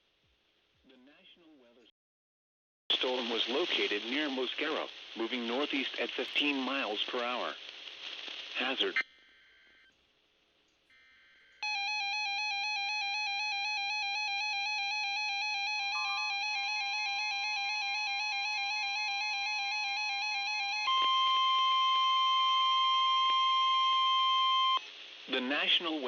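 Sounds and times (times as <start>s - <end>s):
faint radio hiss: 0.0s - 1.9s, 2.9s - 11.7s, 16.0s - 26.0s
steady single-pitched alarm tone: 11.2s - 24.8s
warbling electronic alert tone: 11.6s - 19.7s.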